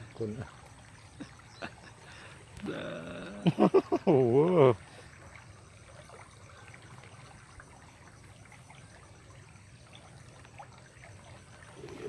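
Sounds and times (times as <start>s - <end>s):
faint trickle of water: 0.0s - 12.0s.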